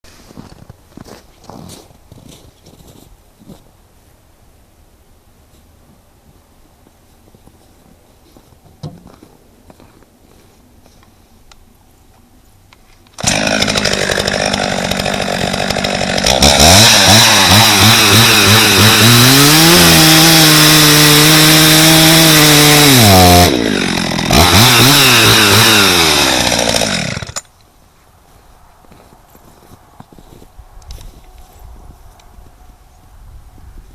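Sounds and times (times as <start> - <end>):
chainsaw revving: 13.2 - 27.4.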